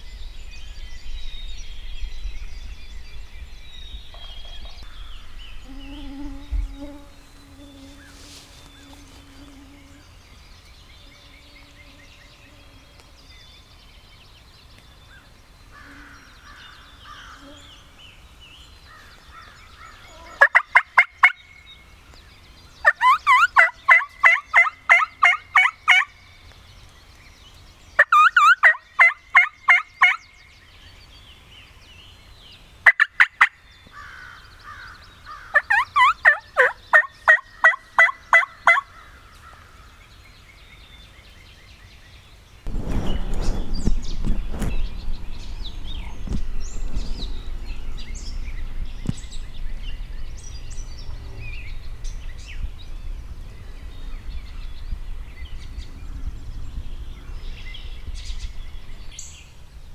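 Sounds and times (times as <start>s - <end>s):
turkey yelps: 35.6s - 38.9s
steady rushing noise: 42.7s - 59.0s.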